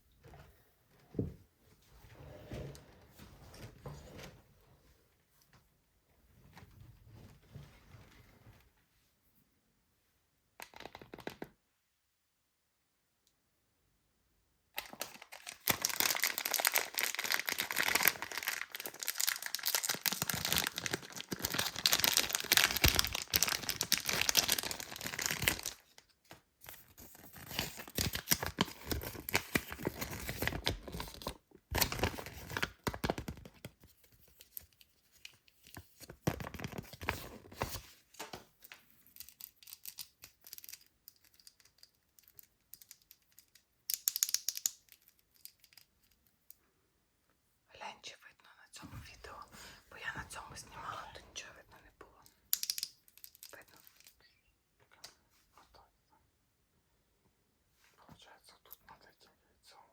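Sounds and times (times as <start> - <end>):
packaging tearing and crinkling: 14.8 - 25.9, 26.9 - 33.5.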